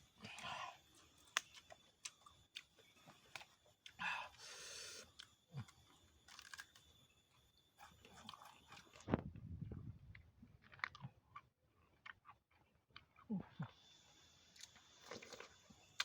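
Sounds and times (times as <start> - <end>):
chewing raw vegetables: 0.2 - 4.4, 5.0 - 6.9, 7.8 - 9.2, 10.0 - 13.8, 14.6 - 16.0.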